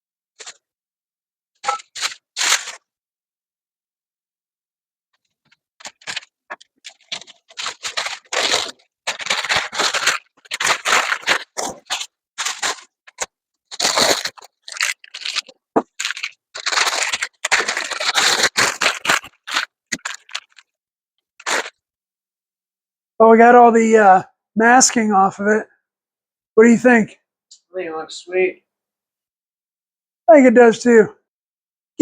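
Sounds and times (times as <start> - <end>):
tape and paper tearing and crinkling: 1.7 - 2.9, 5.8 - 20.7, 21.4 - 21.8.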